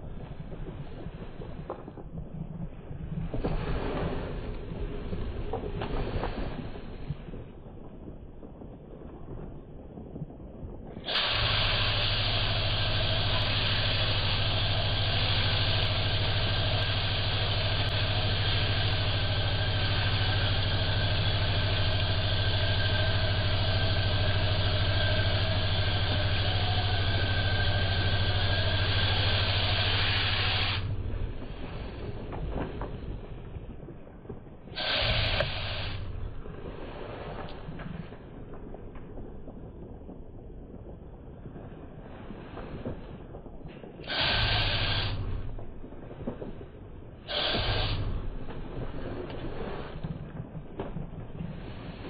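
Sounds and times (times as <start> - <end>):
electric machine humming and hissing: 11.0 - 33.6, 34.7 - 38.2, 44.0 - 52.0.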